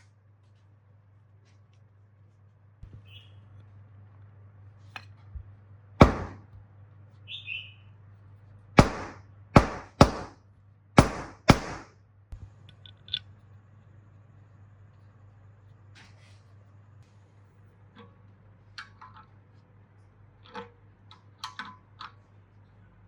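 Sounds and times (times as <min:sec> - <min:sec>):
sharp knocks on hard object: 0:06.0 - 0:06.4, 0:08.8 - 0:10.4, 0:11.0 - 0:11.9.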